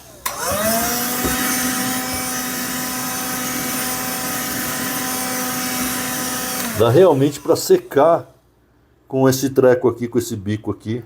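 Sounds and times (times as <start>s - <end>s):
handheld vacuum motor whine: 0.0s - 8.0s.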